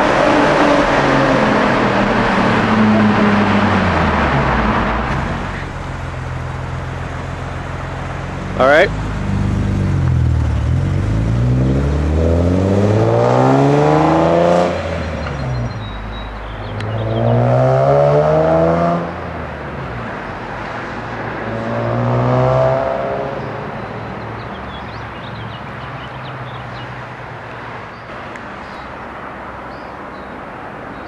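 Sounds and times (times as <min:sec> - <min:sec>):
car engine revving: 0:00.0 - 0:23.8.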